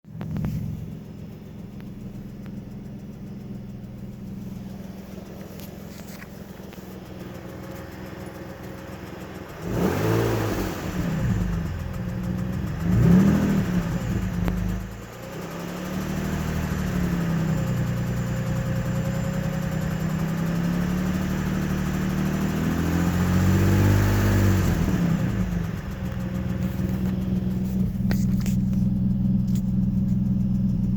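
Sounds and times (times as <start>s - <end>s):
car engine idling and revving: 0.0s - 30.9s
engine ticking: 0.0s - 30.9s.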